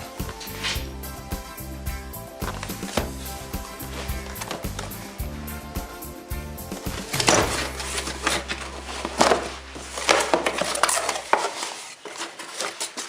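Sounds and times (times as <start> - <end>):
cardboard and plastic rustling: 0.0 - 0.9, 2.4 - 5.5, 6.7 - 13.0.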